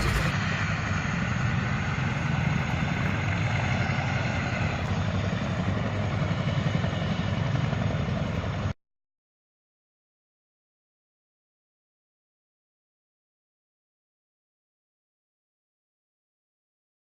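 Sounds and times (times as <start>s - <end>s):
loud rumbling noise: 0.0s - 6.2s.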